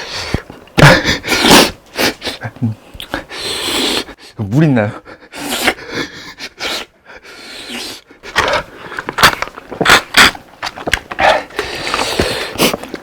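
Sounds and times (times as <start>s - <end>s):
crisp crunches of chewing: 7.8s - 13.0s.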